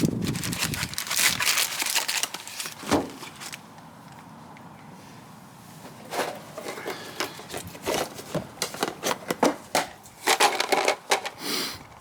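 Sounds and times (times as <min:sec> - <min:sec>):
rustle: 0:00.0 - 0:11.8
car parts clicking and clunking: 0:05.9 - 0:11.4.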